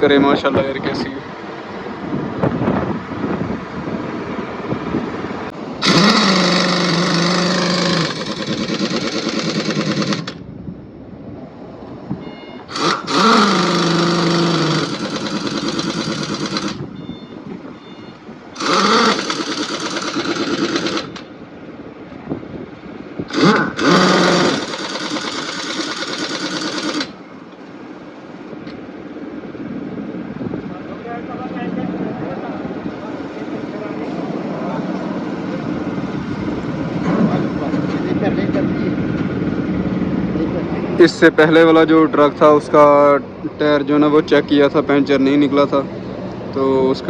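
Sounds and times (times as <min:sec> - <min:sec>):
pneumatic impact wrench: 0:05.8 - 0:10.4, 0:12.7 - 0:16.9, 0:18.6 - 0:21.3, 0:23.2 - 0:27.2.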